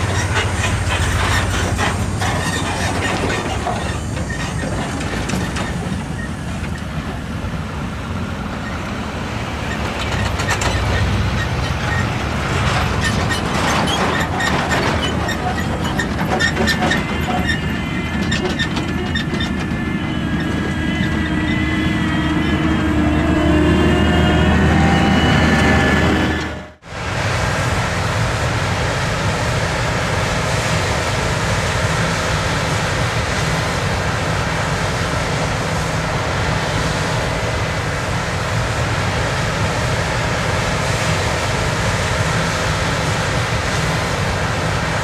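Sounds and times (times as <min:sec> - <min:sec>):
machinery clattering: 0:00.0 - 0:23.4
low engine drone: 0:00.0 - 0:45.0
rising whining tones: 0:19.2 - 0:26.8.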